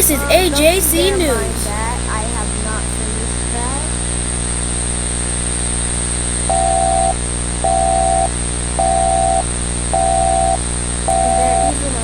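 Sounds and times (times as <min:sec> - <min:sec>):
electronic hum and hiss: 0:00.0 - 0:12.0
two-tone electronic alert beeps: 0:10.0 - 0:11.6.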